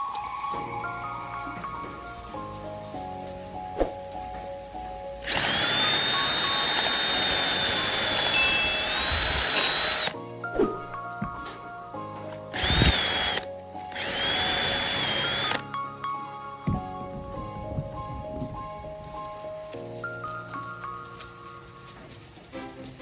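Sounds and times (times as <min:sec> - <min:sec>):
background music: 0:00.0 - 0:23.0
electric power tool whining: 0:05.2 - 0:10.2, 0:12.5 - 0:15.7.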